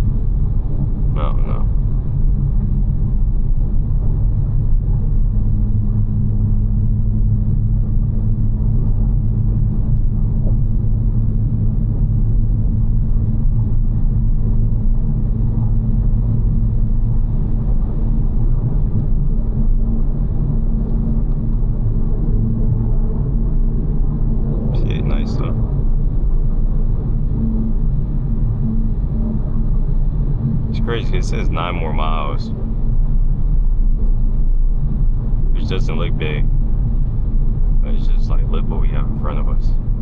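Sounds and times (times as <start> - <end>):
car engine droning: 24.7 - 25.6, 27.5 - 32.7, 35.6 - 36.4, 37.8 - 40.0.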